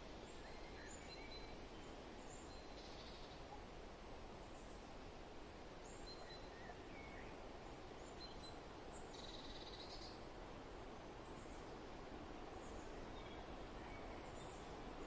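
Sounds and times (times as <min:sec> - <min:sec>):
soft wind: 0:00.0 - 0:15.0
faint bird chirps: 0:00.2 - 0:03.6, 0:05.8 - 0:07.4, 0:08.0 - 0:10.2.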